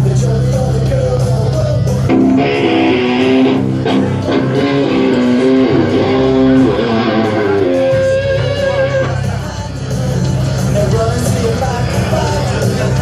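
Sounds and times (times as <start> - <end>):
low bass: 0.0 - 13.0
electric guitar melody: 2.0 - 9.6.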